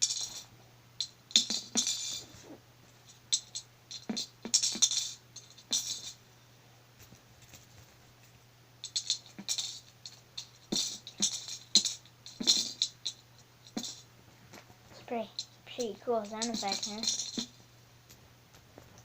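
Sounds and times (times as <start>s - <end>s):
coins rattling in piggy bank: 0.0s - 2.5s, 3.1s - 6.2s, 8.8s - 14.0s, 15.2s - 17.6s.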